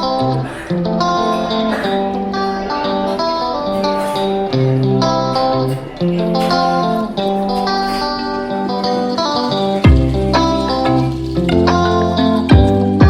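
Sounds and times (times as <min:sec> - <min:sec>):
plucked guitar music: 0:00.0 - 0:13.0
steady bass line: 0:09.8 - 0:13.0.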